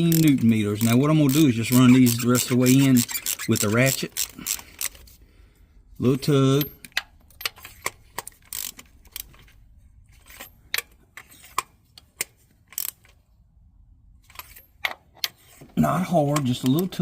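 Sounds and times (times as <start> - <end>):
hand ratchet clicking: 0.0 - 5.1, 6.6 - 9.5, 10.3 - 13.2
metal tool handling: 14.2 - 15.7.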